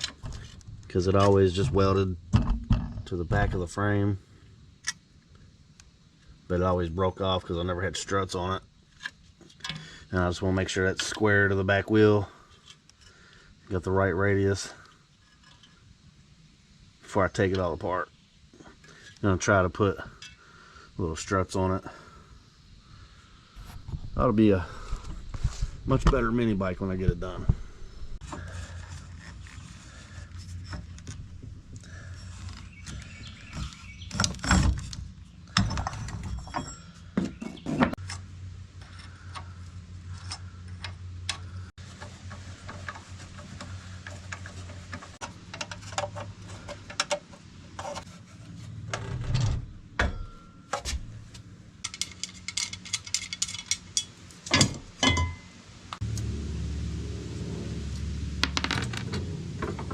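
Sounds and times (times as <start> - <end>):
steady low hum: 0.0 - 37.2, 37.9 - 59.9
tools knocking and clicking: 51.8 - 55.5.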